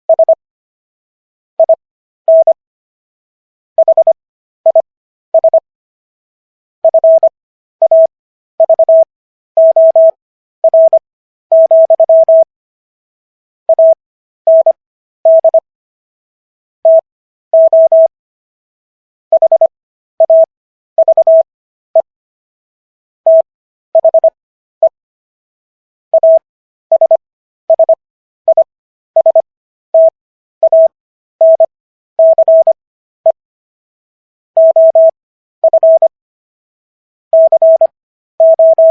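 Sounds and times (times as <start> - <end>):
morse code beeps: 0.1 - 0.4, 1.6 - 2.6, 3.8 - 4.8, 5.4 - 5.6, 6.8 - 12.5, 13.7 - 15.6, 17.6 - 18.1, 19.3 - 21.4, 24.0 - 24.4, 26.2 - 29.4, 30.0 - 33.4, 34.6 - 36.1, 37.4 - 38.9.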